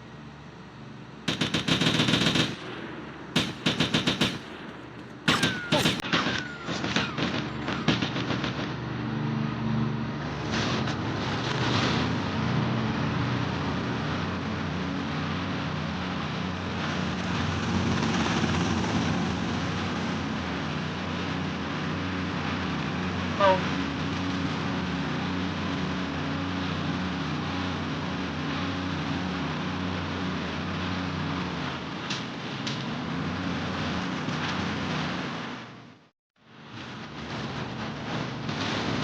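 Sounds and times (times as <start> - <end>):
engine running steadily: 0.0 - 39.0
single gunshots: 1.3 - 8.5
machine-gun fire: 1.3 - 9.4.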